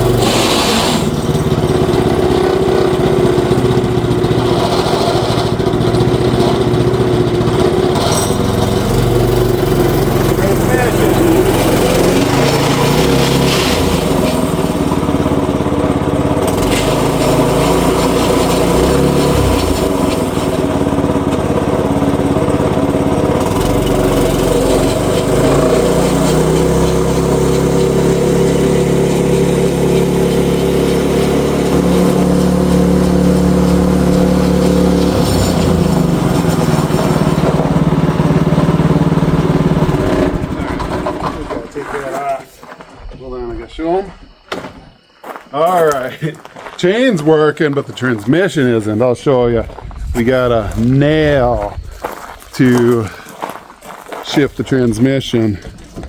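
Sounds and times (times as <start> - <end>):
small engine running: 0.0 - 42.1.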